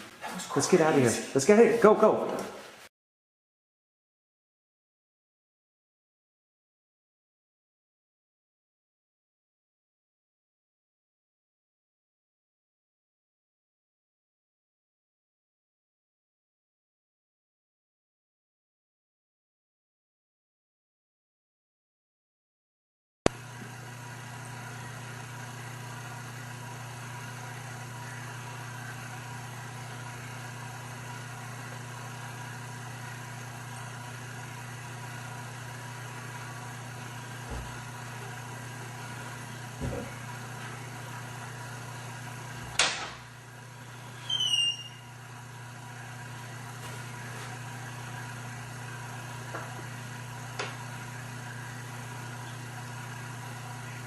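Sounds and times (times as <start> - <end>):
low electrical hum: 23.3 - 54.0
high falling squeak: 44.2 - 45.1.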